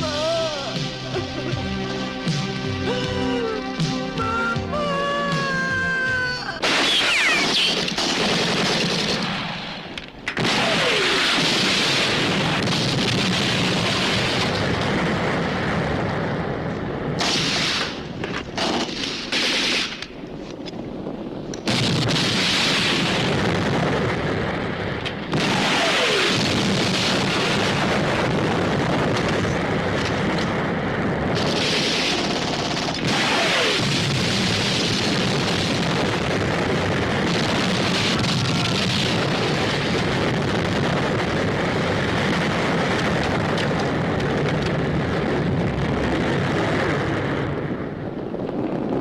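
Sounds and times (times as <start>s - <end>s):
explosions: 3.8s - 49.0s
falling whistles: 4.2s - 7.8s
heavy gunfire: 6.6s - 16.3s, 17.2s - 20.0s, 21.6s - 47.9s.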